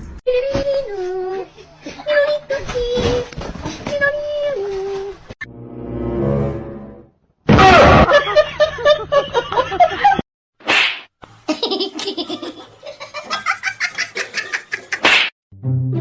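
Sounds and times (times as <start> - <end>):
person laughing: 11.5 - 15.0.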